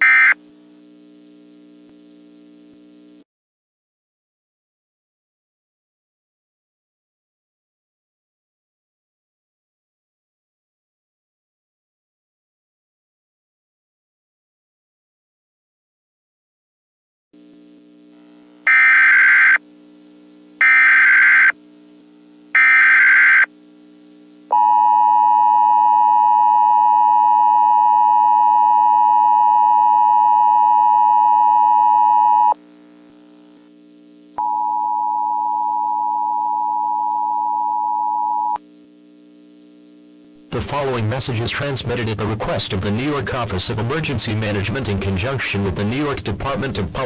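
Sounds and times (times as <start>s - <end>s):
data bursts: 18.7s - 19.6s, 20.6s - 21.5s, 22.6s - 23.5s
two-tone attention signal: 22.6s - 23.5s
single steady tone: 34.1s - 38.6s.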